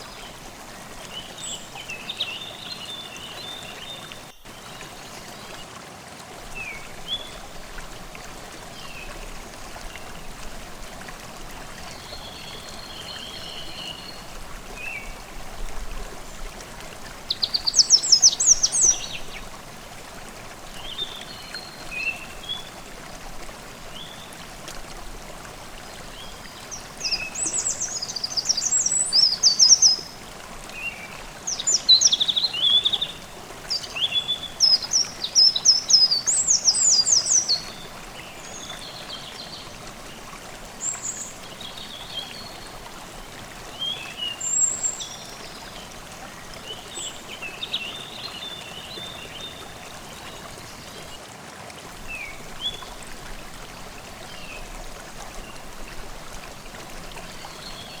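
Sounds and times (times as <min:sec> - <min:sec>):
stream running: 0:00.0 - 0:58.0
songbirds singing: 0:16.3 - 0:19.5, 0:25.9 - 0:42.9, 0:43.7 - 0:51.2.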